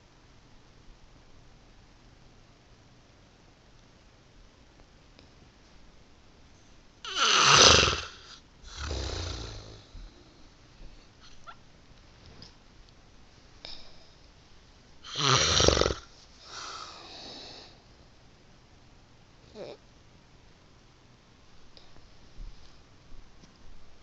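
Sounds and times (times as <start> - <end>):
person snoring: 7.1 - 10.3, 15.0 - 17.7
soft breath out: 16.4 - 17.9.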